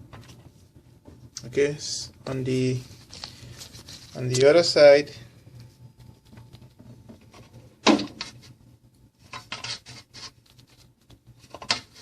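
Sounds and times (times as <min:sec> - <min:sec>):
handling scrapes and knocks: 0:09.2 - 0:10.8.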